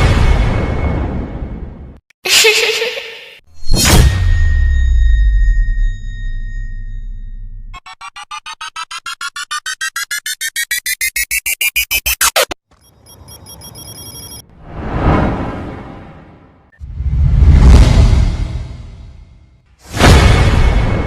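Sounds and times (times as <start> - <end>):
synthetic beeps rising in pitch: 7.8 - 14.4.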